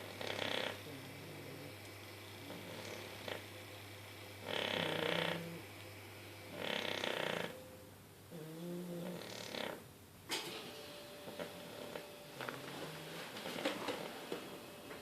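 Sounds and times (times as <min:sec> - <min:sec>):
person snoring: 0:02.4 - 0:03.5, 0:04.4 - 0:05.6, 0:06.5 - 0:07.6, 0:08.3 - 0:09.8.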